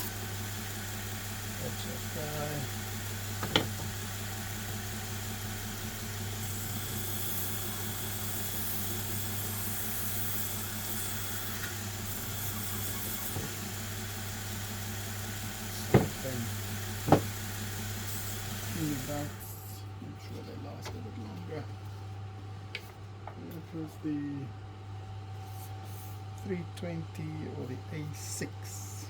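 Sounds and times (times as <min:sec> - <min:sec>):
electric motor humming: 0:00.0 - 0:20.4
sharp knocks: 0:03.4 - 0:03.9, 0:15.9 - 0:16.3, 0:17.1 - 0:17.4.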